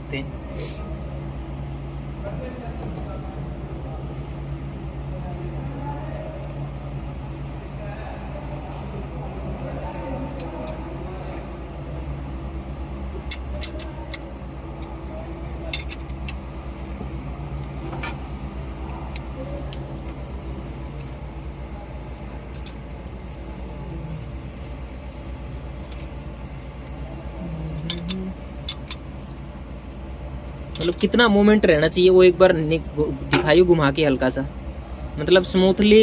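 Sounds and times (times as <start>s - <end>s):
steady low hum: 0.0s - 36.0s
metal tools clicking: 13.3s - 14.3s, 15.7s - 16.4s, 27.8s - 29.0s, 30.7s - 31.2s.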